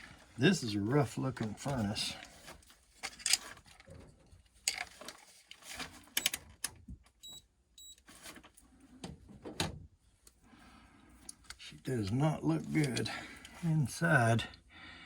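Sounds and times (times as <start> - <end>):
handling clicks knocks and rustles: 1.3 - 7.2, 12.6 - 13.6.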